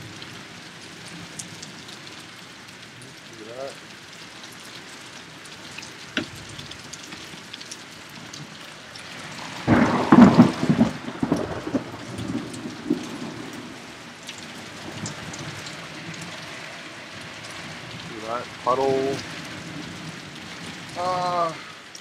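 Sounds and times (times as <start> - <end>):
steady rain: 0.0 - 22.0
thunderclap: 9.4 - 13.9.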